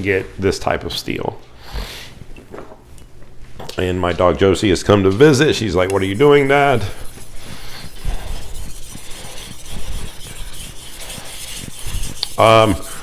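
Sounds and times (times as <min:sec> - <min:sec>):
knife scraping on whetstone: 0:05.9 - 0:13.0.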